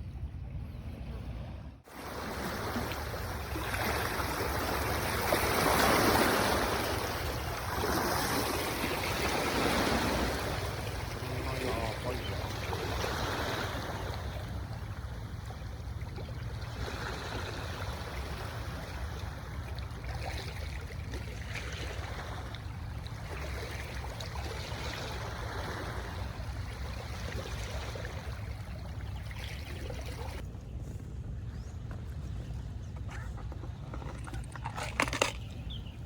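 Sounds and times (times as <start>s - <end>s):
wind rumble on microphone: 0.0s - 20.1s
surf washing on shore: 1.9s - 19.2s.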